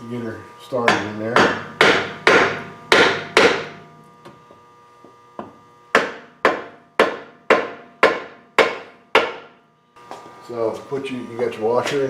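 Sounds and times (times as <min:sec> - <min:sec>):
hammer on metal: 0:00.8 - 0:04.0, 0:05.4 - 0:09.6.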